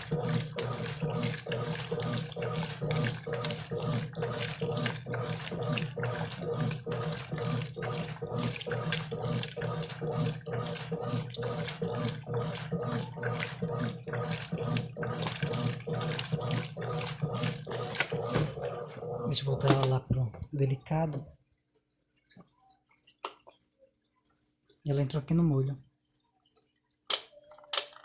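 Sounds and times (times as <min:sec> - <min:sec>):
water sloshing in washing machine: 0:00.0 - 0:20.3
washing machine motor hum: 0:00.0 - 0:21.3.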